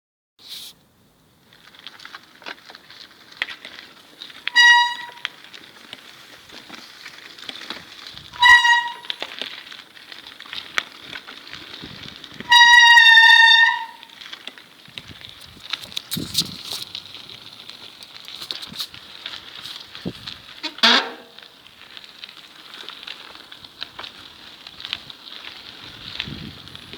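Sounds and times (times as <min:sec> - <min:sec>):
light clicking and rolling patter: 0:01.4 - 0:26.9
bicycle disc brakes squealing: 0:04.4 - 0:05.4, 0:08.2 - 0:09.5, 0:12.4 - 0:14.3, 0:20.6 - 0:21.5.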